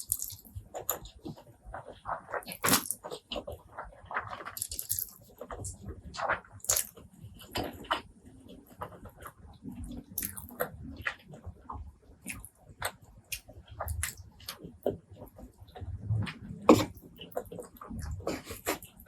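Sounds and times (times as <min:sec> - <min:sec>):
mouth chewing and biting: 0:02.4 - 0:03.4, 0:09.8 - 0:10.9, 0:12.2 - 0:14.7
mouth clicks and smacks: 0:12.2 - 0:15.0.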